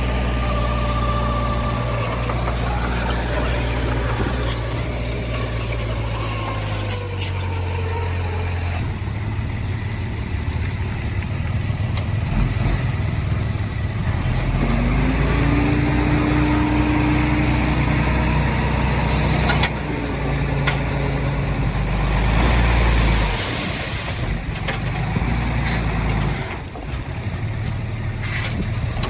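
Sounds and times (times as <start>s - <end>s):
engine whine: 0.0s - 27.8s
heavy machinery diesel engine: 0.0s - 29.0s.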